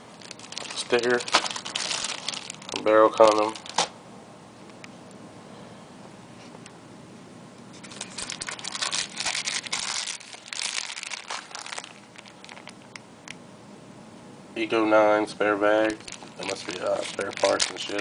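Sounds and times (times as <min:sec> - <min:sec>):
plastic packaging crinkling: 0:00.0 - 0:03.9, 0:07.8 - 0:13.0, 0:15.8 - 0:18.0.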